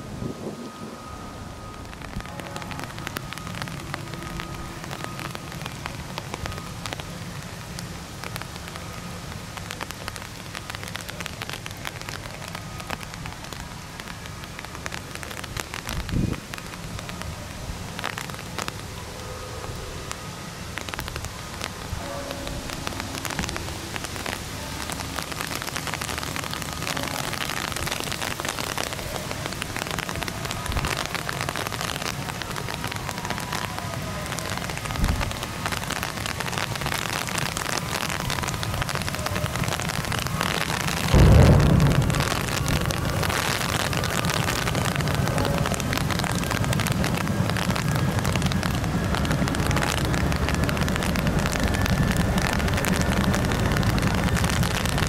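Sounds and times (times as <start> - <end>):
low rumble: 38.2 - 55.0
loud low thump: 41.1 - 43.1.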